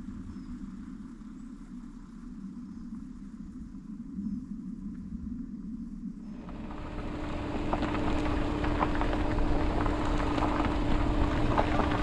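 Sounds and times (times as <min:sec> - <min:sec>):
car engine rumbling: 0:06.3 - 0:12.0.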